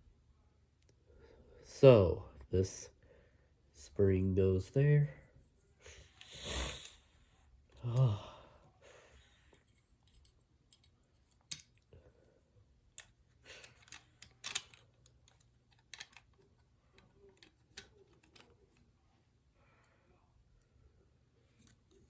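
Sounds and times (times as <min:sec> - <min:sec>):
plastic toy parts clicking: 0:09.6 - 0:11.8, 0:12.9 - 0:18.8.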